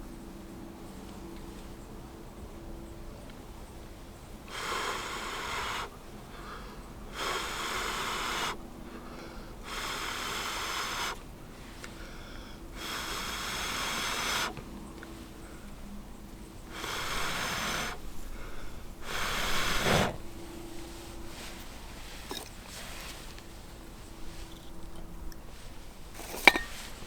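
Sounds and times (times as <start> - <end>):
person blowing out air: 7.1 - 8.6, 9.6 - 11.2, 12.8 - 14.6, 16.7 - 18.1, 19.0 - 20.3.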